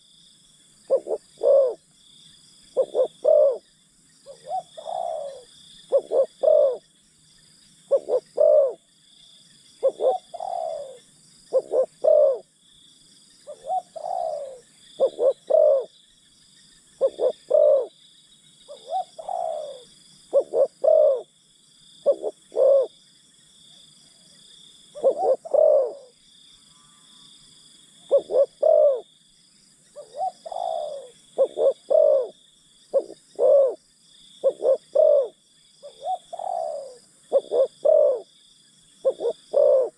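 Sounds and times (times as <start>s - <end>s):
doves cooing: 0.9s - 1.8s, 2.7s - 3.7s, 4.3s - 6.8s, 7.9s - 8.8s, 9.8s - 12.5s, 13.5s - 15.9s, 17.0s - 17.9s, 18.7s - 21.3s, 22.0s - 22.9s, 25.0s - 26.2s, 28.1s - 29.1s, 30.0s - 33.8s, 34.4s - 38.3s, 39.0s - 39.9s.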